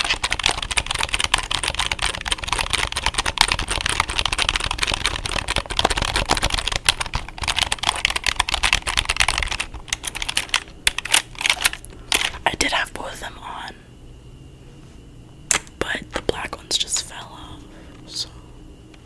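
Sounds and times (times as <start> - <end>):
fast typing on keyboard: 0.0 - 12.3.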